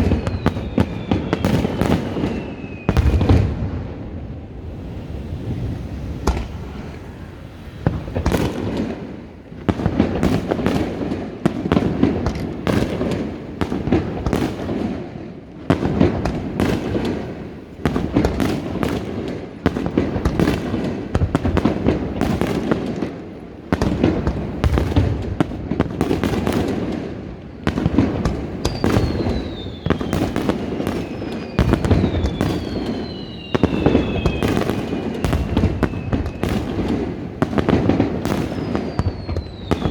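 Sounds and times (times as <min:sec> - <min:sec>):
falling firework whistles: 0:00.0 - 0:15.1, 0:27.7 - 0:39.9
fireworks booming and crackling: 0:00.0 - 0:39.9.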